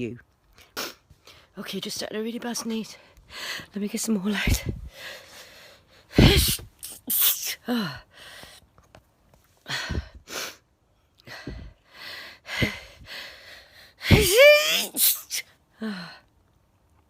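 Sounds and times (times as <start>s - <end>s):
woman sneezing: 6.2s - 7.6s, 14.1s - 15.5s.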